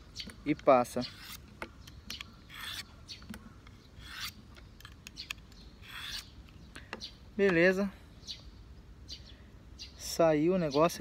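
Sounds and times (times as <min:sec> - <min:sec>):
knife blade on sharpening stone: 0:01.0 - 0:01.4, 0:02.5 - 0:02.9, 0:04.0 - 0:04.4.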